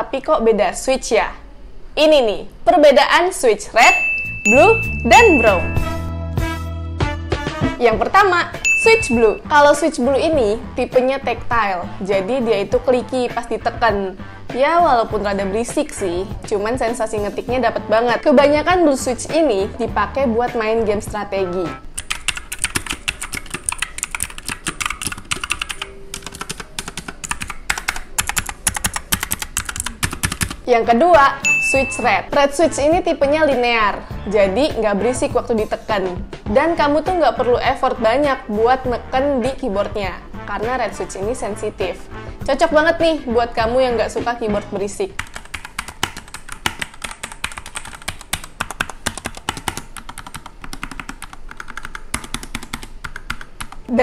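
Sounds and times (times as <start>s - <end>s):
clicky mechanical keyboard typing: 22.0s - 30.6s, 45.2s - 53.9s.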